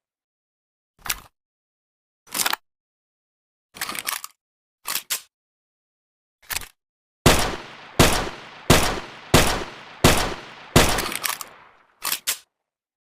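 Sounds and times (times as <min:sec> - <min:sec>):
pistol gunshots: 0:07.3 - 0:11.8
pistol clicks: 0:07.3 - 0:12.4.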